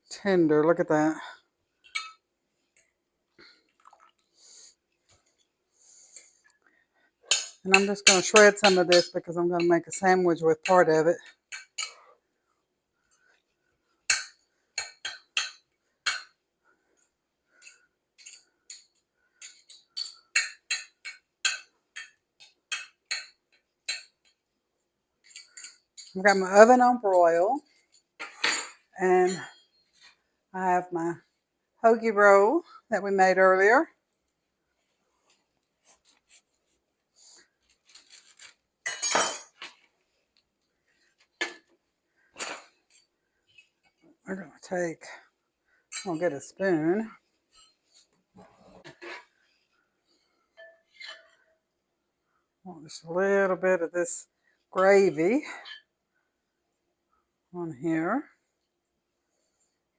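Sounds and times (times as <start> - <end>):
metal utensils clinking on dish: 1.9 - 2.2, 7.3 - 10.0, 17.6 - 23.3, 38.4 - 39.7, 50.6 - 51.3
dishes and utensils clinking: 7.3 - 10.0, 37.9 - 39.8, 50.6 - 51.4.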